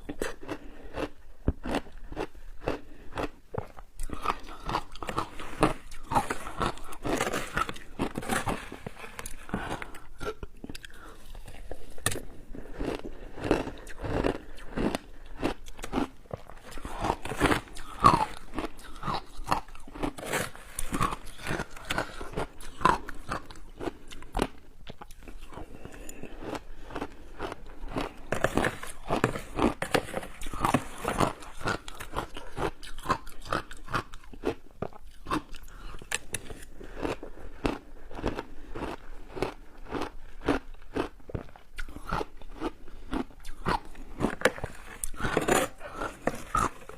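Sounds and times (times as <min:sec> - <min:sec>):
crunching shaved ice: 0:12.8 - 0:24.5.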